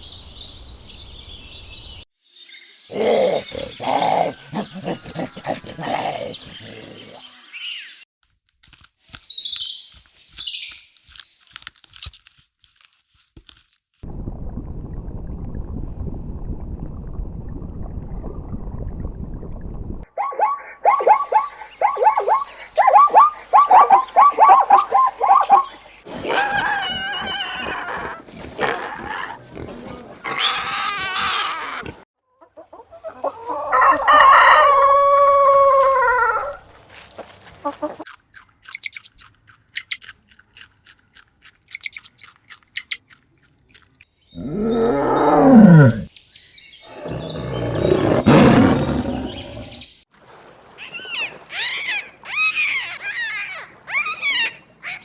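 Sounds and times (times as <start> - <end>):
long animal call: 2.9 - 7.3, 26.1 - 32.0, 44.4 - 46.1
high chirps: 9.1 - 11.4, 38.7 - 40.0, 41.7 - 43.0
rooster crowing: 33.4 - 36.6.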